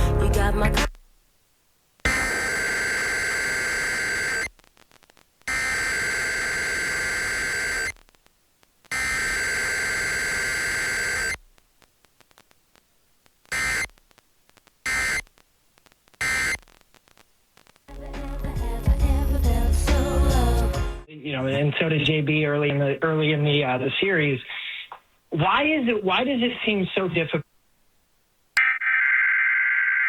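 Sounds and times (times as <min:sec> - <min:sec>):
harsh digital data bursts: 0:02.1 - 0:04.5, 0:05.5 - 0:08.0, 0:08.9 - 0:11.4, 0:16.2 - 0:16.6.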